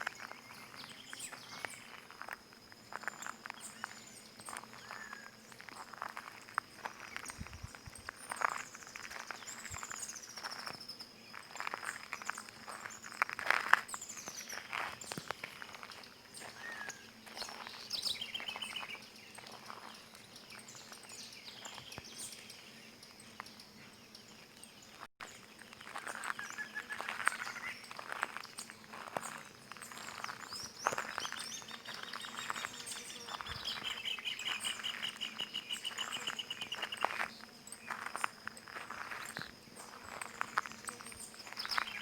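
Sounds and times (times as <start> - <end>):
footsteps on stone and dry vegetation: 0.0 - 22.2, 24.9 - 42.0
birds singing: 13.9 - 25.0, 25.8 - 42.0.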